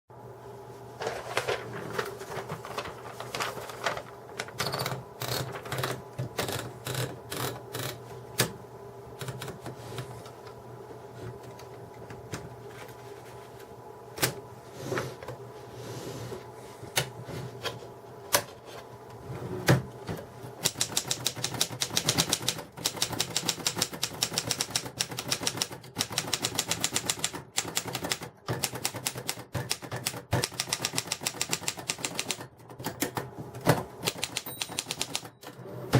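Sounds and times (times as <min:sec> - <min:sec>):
typewriter keys clacking: 0:04.4 - 0:08.0, 0:20.6 - 0:32.4, 0:34.0 - 0:35.5.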